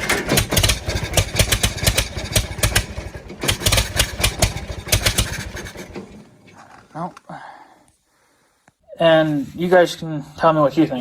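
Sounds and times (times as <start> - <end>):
tractor engine cranking: 0.0 - 7.2.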